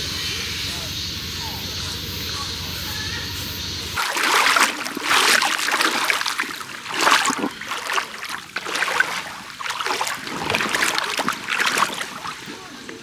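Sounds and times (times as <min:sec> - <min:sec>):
stream water splashing: 0:03.9 - 0:13.0.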